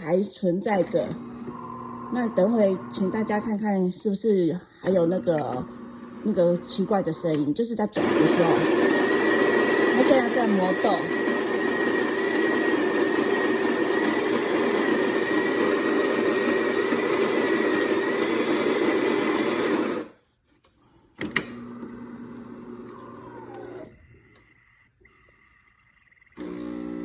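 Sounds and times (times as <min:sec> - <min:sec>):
coffee grinder whining: 0:00.7 - 0:03.7, 0:04.9 - 0:07.4, 0:08.0 - 0:20.1, 0:21.4 - 0:27.0
quiet motor hum: 0:00.7 - 0:04.0, 0:04.8 - 0:07.6, 0:21.3 - 0:27.0.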